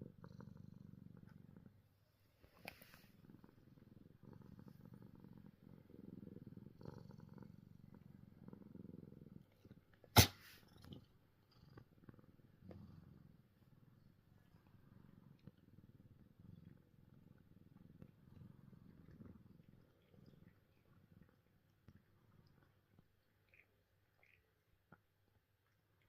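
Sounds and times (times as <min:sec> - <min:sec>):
cat purring: 0:00.0 - 0:26.0
cat sneezing: 0:10.2 - 0:10.6.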